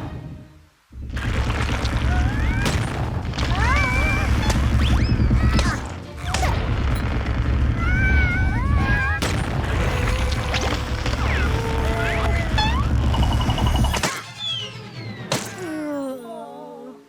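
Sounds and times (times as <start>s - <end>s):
busy cartoon music: 3.4s - 16.5s.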